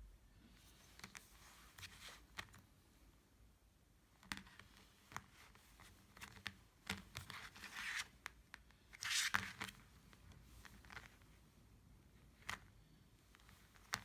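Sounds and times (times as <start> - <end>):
rustling and scraping handling noise: 0.5 - 2.9, 4.2 - 11.6.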